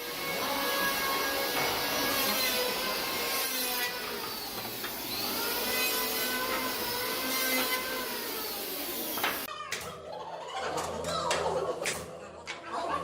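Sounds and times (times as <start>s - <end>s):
power tool motor cutting wood: 0.0s - 9.5s.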